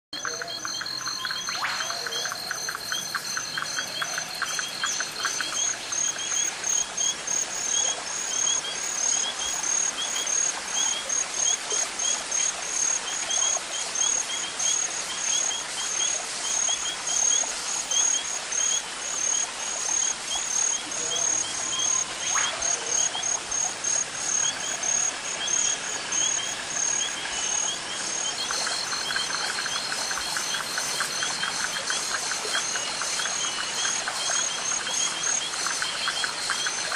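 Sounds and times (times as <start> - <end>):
bird calls: 0.2 - 6.4, 21.0 - 23.6
crickets chirping: 0.2 - 36.9.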